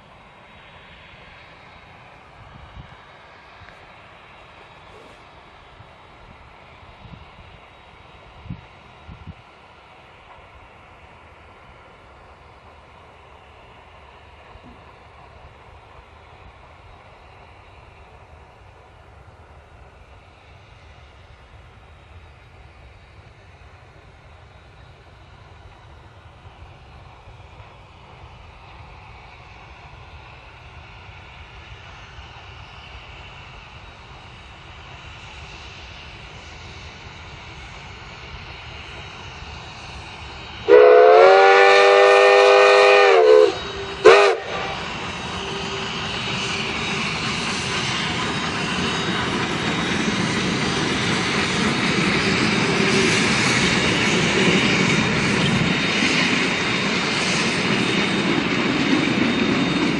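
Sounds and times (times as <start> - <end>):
locomotive running: 33.0 - 59.9
steam locomotive whistle: 40.6 - 46.3.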